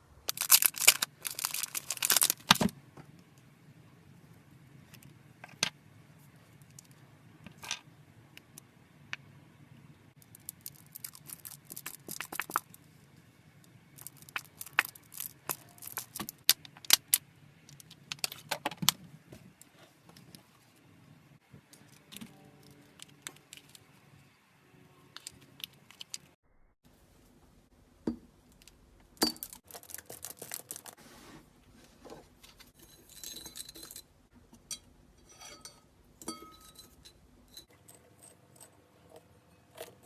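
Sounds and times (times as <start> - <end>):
slime crackling and popping: 0.3 - 2.6, 10.2 - 12.8, 14.0 - 17.2.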